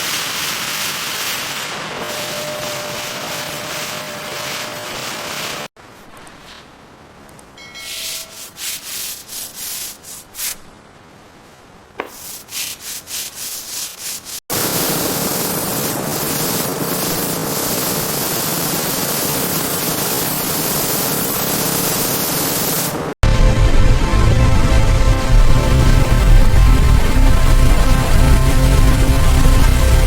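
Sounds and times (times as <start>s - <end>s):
sandpaper strokes: 0.0s - 5.7s, 7.9s - 10.6s, 12.0s - 23.0s
steady loud hiss: 0.0s - 11.2s, 11.9s - 30.0s.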